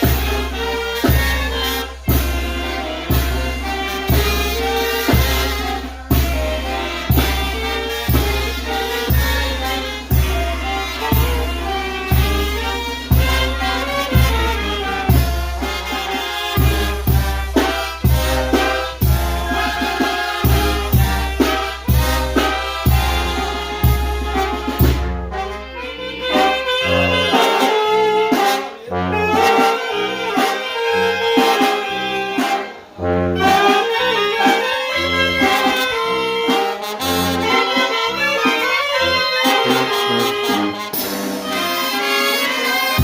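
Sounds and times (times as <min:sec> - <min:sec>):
heavy low drum beats: 0:00.0 - 0:25.4
brass band playing: 0:00.0 - 0:43.0.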